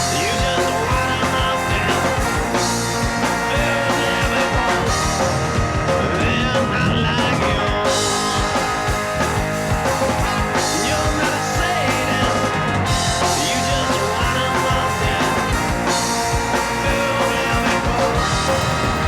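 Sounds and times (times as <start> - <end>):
person singing: 0.0 - 19.0
rock music with guitar and drums: 0.0 - 19.0.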